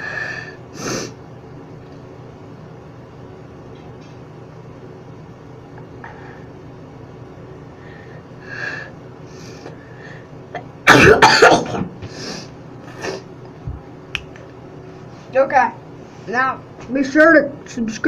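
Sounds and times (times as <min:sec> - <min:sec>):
person breathing: 0:06.0 - 0:06.6, 0:07.8 - 0:10.3
person sneezing: 0:10.9 - 0:12.3.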